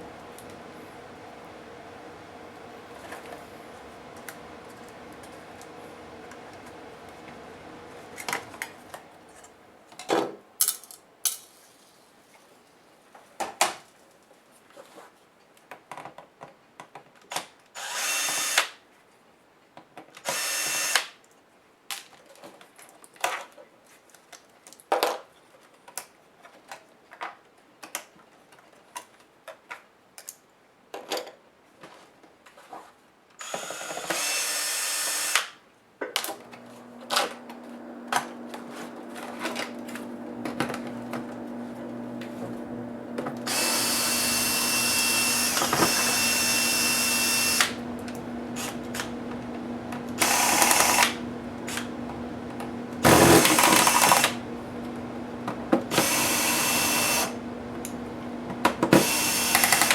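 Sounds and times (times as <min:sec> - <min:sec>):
electric screwdriver whirring: 0:17.8 - 0:18.8, 0:20.3 - 0:21.1, 0:33.4 - 0:35.6, 0:36.4 - 0:59.9
screws and plastic parts clicking: 0:58.9 - 0:59.9.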